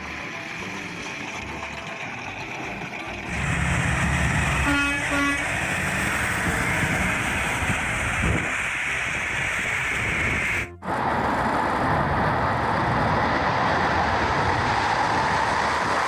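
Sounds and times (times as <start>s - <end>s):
vehicle running: 0.0s - 16.0s
short horn toots: 4.5s - 5.5s.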